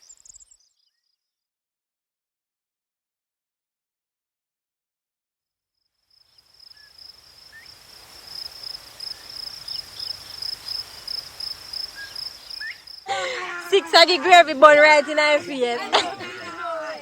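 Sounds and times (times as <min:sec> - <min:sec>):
insect pulsing trill: 0:06.1 - 0:13.1.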